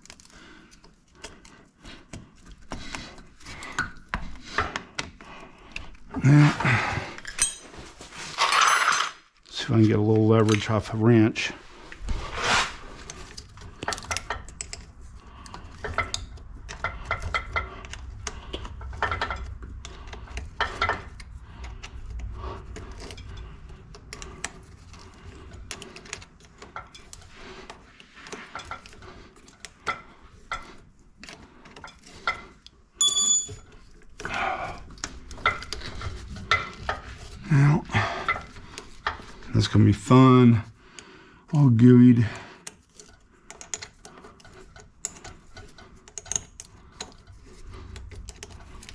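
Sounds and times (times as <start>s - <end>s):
hand tools clinking on metal: 7.2s - 9.2s, 33.0s - 33.7s
high metallic ring: 33.0s - 33.6s.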